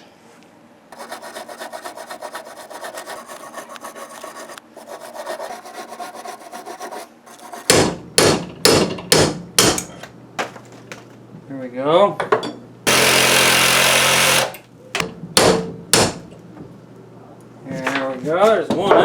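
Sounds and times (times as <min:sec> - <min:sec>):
file scraping metal: 0:00.9 - 0:07.8.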